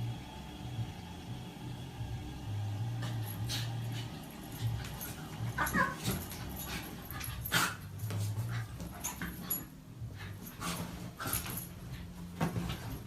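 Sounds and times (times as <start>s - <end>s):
dog whimpering: 5.6s - 6.1s
dog yelping: 5.6s - 6.3s.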